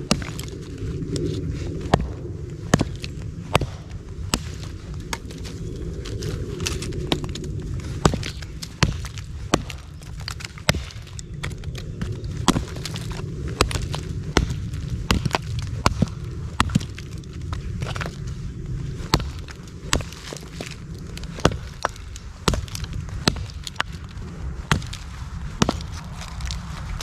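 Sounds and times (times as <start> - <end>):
wood being chopped: 0.0 - 18.2, 19.0 - 27.0
low steady rumble: 0.0 - 27.0.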